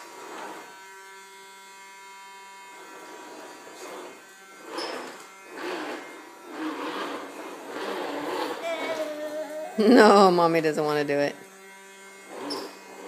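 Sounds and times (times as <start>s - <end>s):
person speaking: 8.6s - 11.3s.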